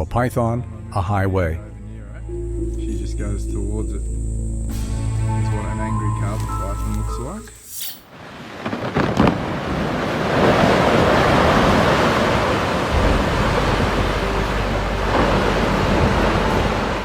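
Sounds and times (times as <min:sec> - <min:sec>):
loud rushing noise: 0:10.7 - 0:17.0.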